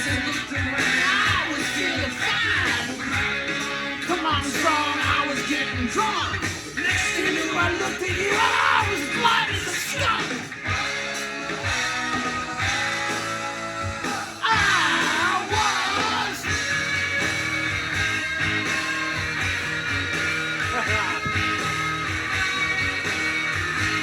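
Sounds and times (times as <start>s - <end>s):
person singing: 0.0s - 3.1s, 12.2s - 16.6s
drums on a steady beat: 0.0s - 24.0s
electric guitar: 0.0s - 24.0s.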